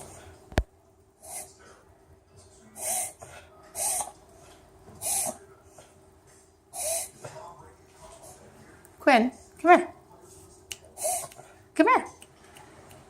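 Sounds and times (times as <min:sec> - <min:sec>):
dog reverse sneezing: 0:03.8 - 0:04.1, 0:05.0 - 0:05.4, 0:06.8 - 0:07.2, 0:11.0 - 0:11.4.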